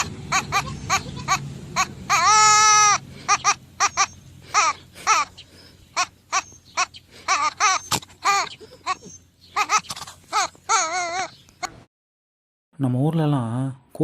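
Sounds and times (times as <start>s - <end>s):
goat bleating: 0.0s - 5.4s.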